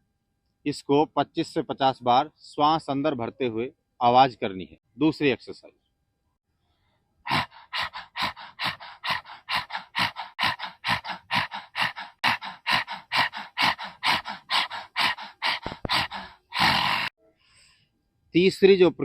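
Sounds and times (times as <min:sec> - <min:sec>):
rapid forceful breathing: 0:07.3 - 0:17.7.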